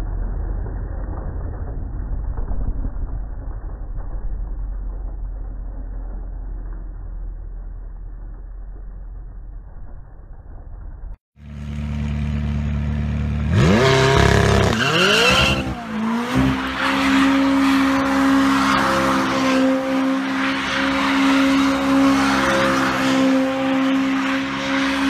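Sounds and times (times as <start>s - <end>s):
dull rumble: 0.0s - 13.0s
car engine revving: 11.4s - 25.0s.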